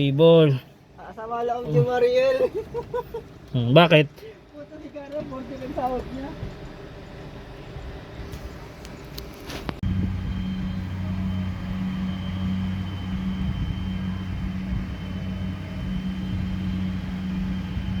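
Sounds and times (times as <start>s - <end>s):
low engine hum: 0.0s - 18.0s
faint high whine: 8.8s - 18.0s.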